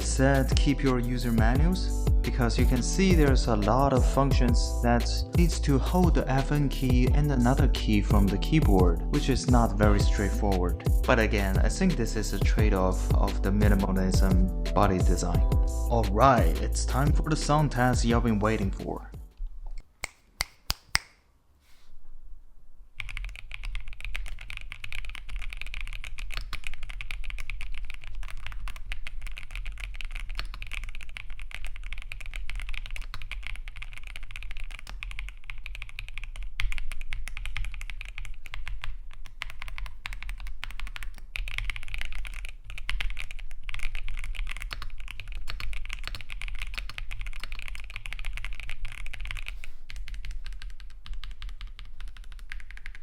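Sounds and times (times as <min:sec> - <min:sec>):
mechanical keyboard typing: 0:23.0 - 0:53.0.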